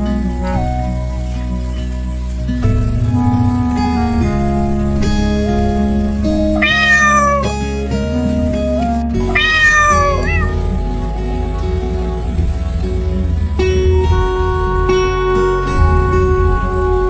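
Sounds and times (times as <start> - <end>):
soft background music: 0.0 - 17.0
cat meowing: 6.5 - 7.6, 9.2 - 10.7.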